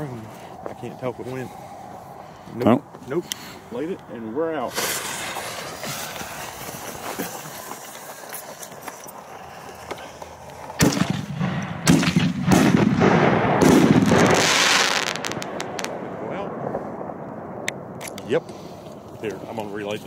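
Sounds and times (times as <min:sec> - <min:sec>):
firework rushing and crackling: 0:04.6 - 0:16.1
firework bangs: 0:04.7 - 0:07.1, 0:10.7 - 0:18.0.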